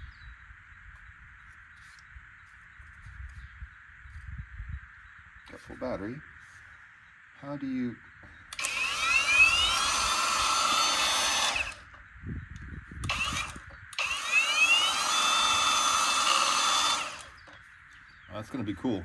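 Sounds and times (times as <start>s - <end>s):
angle grinder whine: 8.5s - 12.0s, 13.0s - 17.6s.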